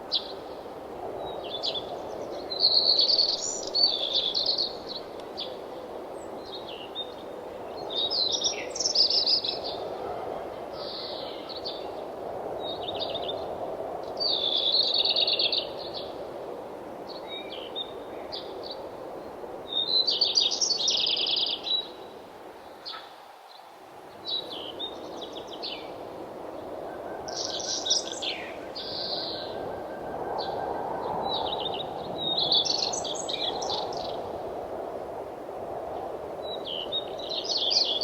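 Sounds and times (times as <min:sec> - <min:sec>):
songbirds chirping and trilling: 0:22.7 - 0:34.2
wind rushing: 0:26.0 - 0:37.3.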